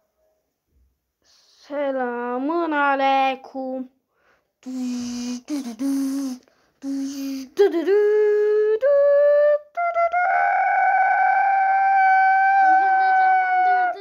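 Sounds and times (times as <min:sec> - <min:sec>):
cartoon voice humming: 0:04.6 - 0:14.0.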